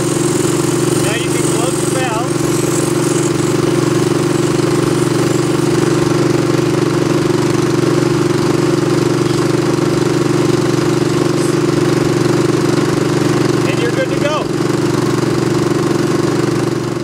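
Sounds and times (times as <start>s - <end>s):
air compressor engine running: 0.0s - 17.0s.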